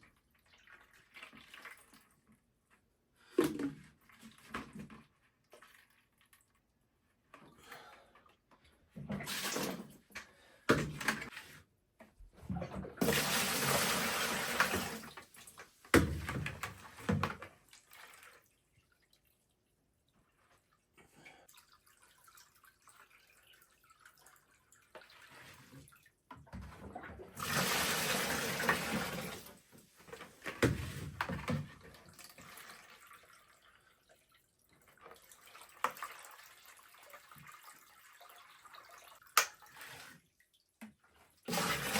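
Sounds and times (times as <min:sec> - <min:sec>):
water pouring and splashing: 0:00.2 - 0:02.3, 0:09.0 - 0:10.1, 0:12.7 - 0:19.6, 0:20.2 - 0:41.9
bucket knocks: 0:15.9 - 0:17.3.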